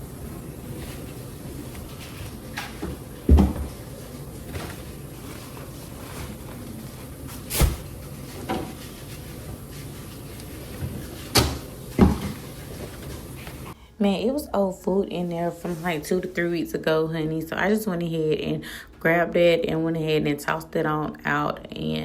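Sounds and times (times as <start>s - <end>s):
plastic drawers and containers clattering: 10.8s - 13.6s.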